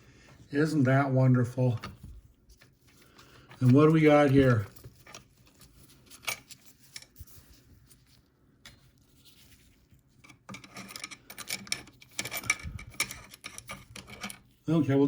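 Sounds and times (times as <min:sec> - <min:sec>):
metal parts scraping and clicking: 0:02.8 - 0:07.3, 0:10.2 - 0:14.6.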